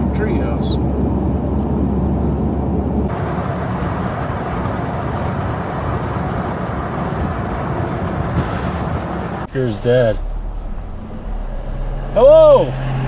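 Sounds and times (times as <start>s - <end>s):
vehicle road noise: 0.0s - 9.5s.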